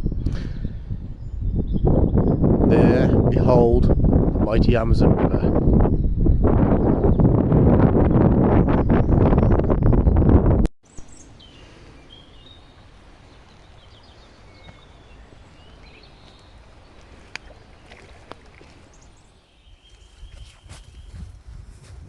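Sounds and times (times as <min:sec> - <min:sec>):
small birds chirping: 0:10.9 - 0:21.3.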